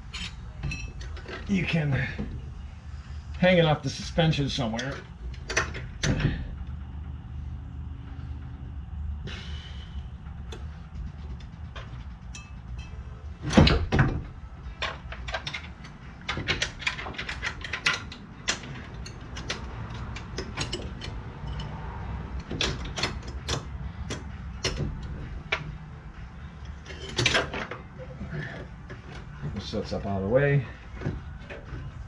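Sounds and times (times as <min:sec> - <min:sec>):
metal parts clicking and knocking: 0:00.0 - 0:02.4, 0:04.5 - 0:06.7, 0:10.4 - 0:30.0
steady low hum: 0:00.0 - 0:32.0.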